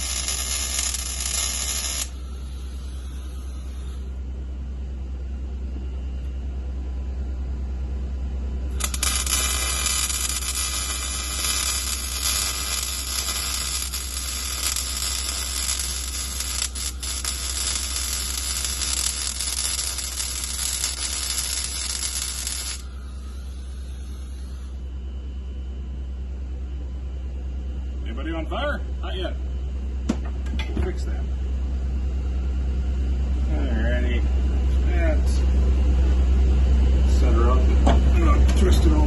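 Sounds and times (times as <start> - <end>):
welding arc crackling: 0.0 - 4.0, 8.7 - 24.6
low hum: 0.0 - 39.0.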